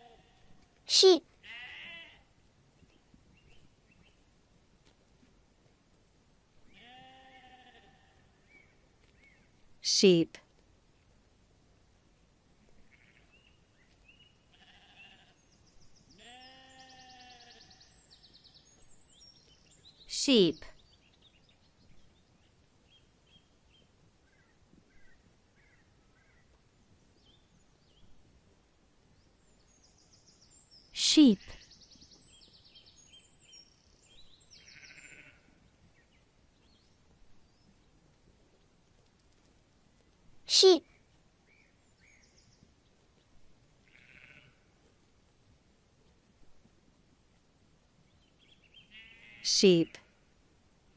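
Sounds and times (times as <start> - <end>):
sheep bleating: 1.4 - 2.3, 6.7 - 8.3, 12.9 - 13.3, 14.5 - 15.4, 16.2 - 17.6, 34.6 - 35.6, 43.8 - 44.6, 48.9 - 49.5
small birds chirping: 12.9 - 26.6, 29.2 - 38.8, 40.6 - 44.5, 48.0 - 50.0.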